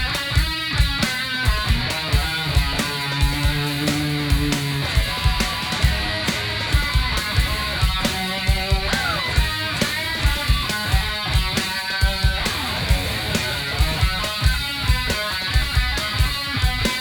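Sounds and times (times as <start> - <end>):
driving drum beat: 0.0 - 17.0
electric guitar: 0.0 - 17.0.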